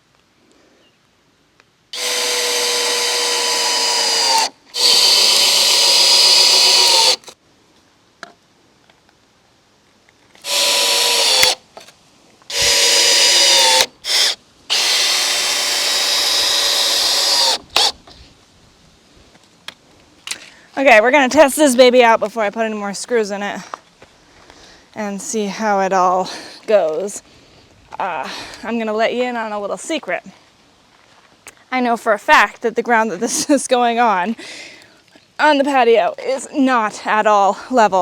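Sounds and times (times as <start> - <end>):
cordless drill whine: 2.0 - 7.4, 10.4 - 11.6, 12.5 - 18.0.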